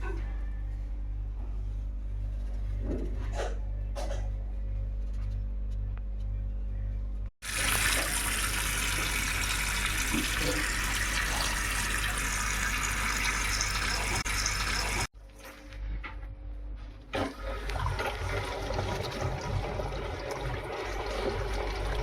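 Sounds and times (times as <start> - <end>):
low steady hum: 0.0 - 22.0
tap water running into sink: 7.4 - 15.1.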